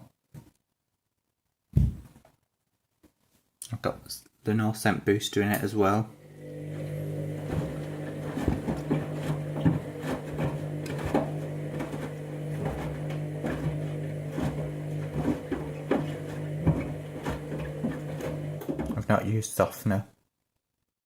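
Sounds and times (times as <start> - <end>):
washing machine motor humming: 6.1 - 19.2
slippers knocking in washing drum: 7.3 - 19.0.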